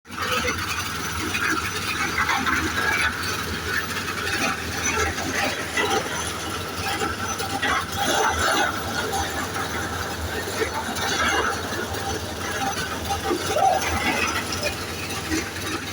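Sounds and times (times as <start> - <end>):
concrete mixer rattling: 0.1 - 15.9
low engine hum: 0.1 - 15.9.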